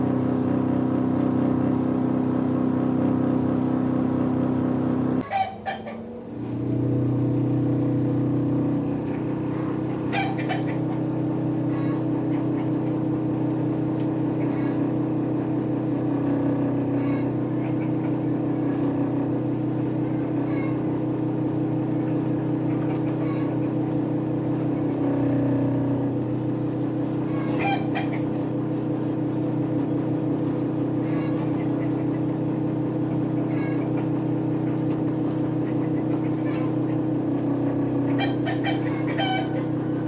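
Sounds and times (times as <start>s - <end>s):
blower motor hum: 0.0s - 5.2s, 6.1s - 40.0s
chickens clucking faintly: 5.2s - 6.2s, 9.0s - 15.0s, 16.6s - 25.3s, 25.9s - 40.0s.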